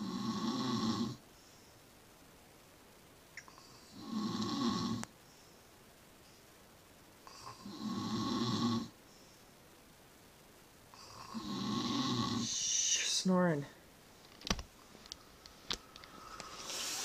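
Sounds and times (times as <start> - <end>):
person snoring: 0.0 - 1.2, 3.6 - 5.1, 7.2 - 9.0, 10.9 - 13.2.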